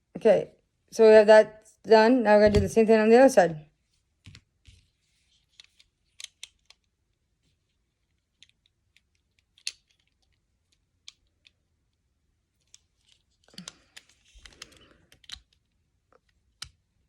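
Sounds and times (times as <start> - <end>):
plastic bricks clicking together: 5.6 - 6.9, 8.3 - 11.6.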